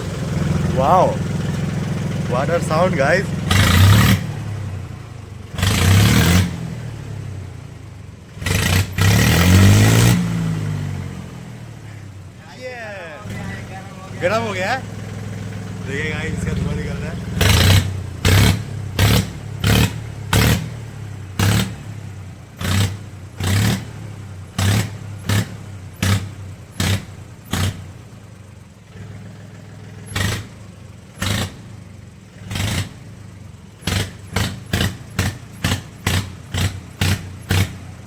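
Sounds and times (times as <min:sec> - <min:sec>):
low tractor engine note: 0:00.0 - 0:06.0, 0:11.6 - 0:20.4
loud exhaust popping bangs: 0:00.0 - 0:07.2, 0:13.1 - 0:27.8.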